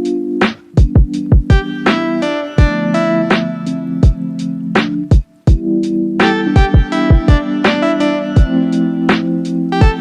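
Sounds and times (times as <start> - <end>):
steady drum beat: 0.0 - 10.0
plucked-string chords: 1.2 - 10.0.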